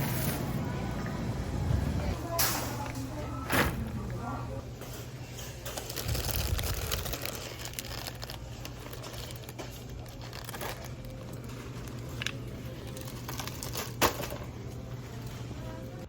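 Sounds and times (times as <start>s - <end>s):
crinkling and rustling: 4.8s - 14.6s.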